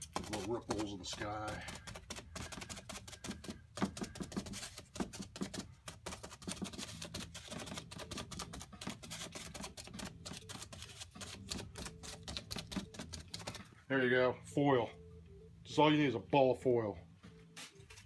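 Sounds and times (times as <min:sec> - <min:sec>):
foil crinkling against canvas: 0:00.0 - 0:13.6, 0:17.6 - 0:18.0.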